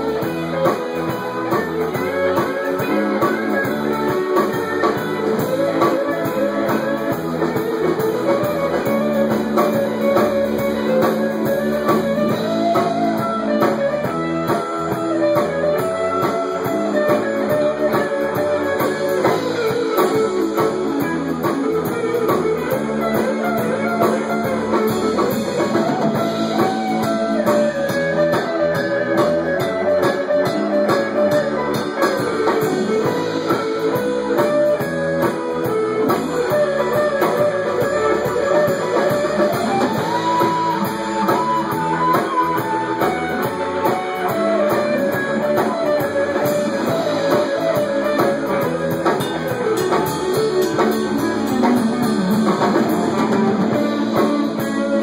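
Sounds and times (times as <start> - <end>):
drum kit: 0.0 - 55.0
guitars: 0.0 - 55.0
lead melody line: 0.0 - 55.0.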